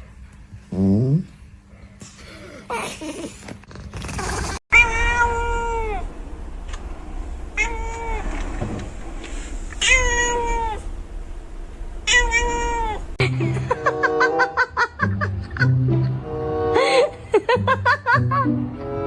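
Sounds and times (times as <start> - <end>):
cat meowing: 4.7 - 6.1, 9.8 - 10.9, 12.0 - 13.1.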